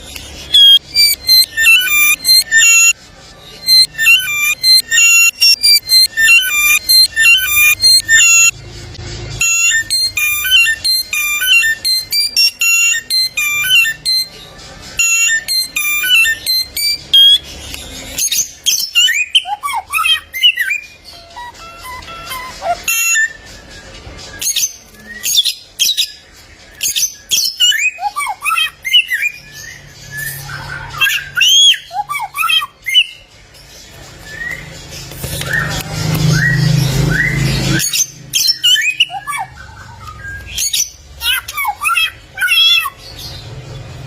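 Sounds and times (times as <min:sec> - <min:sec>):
bird whistling rapid notes: 0:00.5 - 0:03.0, 0:03.6 - 0:08.5, 0:09.4 - 0:14.3, 0:15.0 - 0:17.4, 0:18.2 - 0:26.2.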